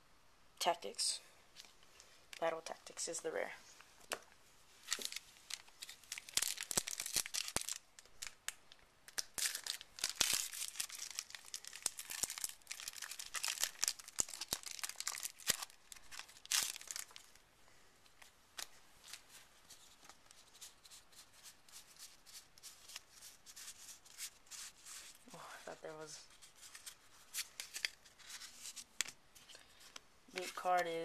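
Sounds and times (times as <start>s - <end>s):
foil wrapper tearing and crinkling: 4.8s - 17.4s, 26.4s - 29.6s.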